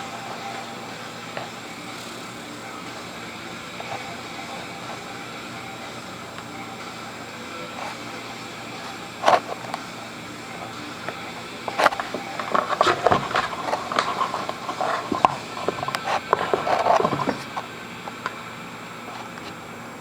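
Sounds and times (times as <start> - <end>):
cat scratching cardboard box: 0.0 - 18.2.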